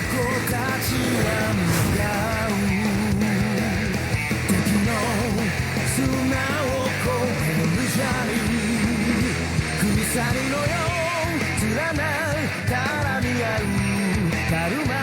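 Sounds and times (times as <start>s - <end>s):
hard rock band with distorted guitars: 0.0s - 15.0s
man singing with vibrato: 0.0s - 15.0s.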